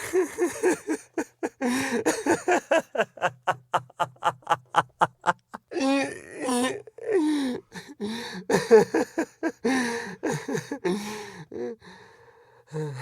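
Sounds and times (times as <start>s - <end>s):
man laughing nervously: 0.0s - 6.0s, 7.7s - 11.1s.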